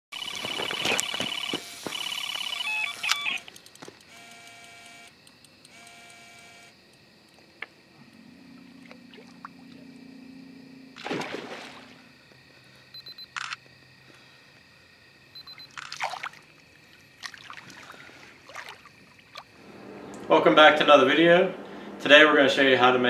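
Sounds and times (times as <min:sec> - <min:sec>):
electronic beeps and tones: 0:00.2 - 0:03.4
low steady hum: 0:07.4 - 0:13.3, 0:16.3 - 0:23.0.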